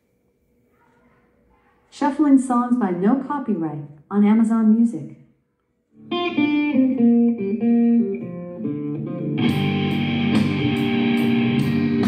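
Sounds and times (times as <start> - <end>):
plucked guitar melody: 6.0 - 12.0.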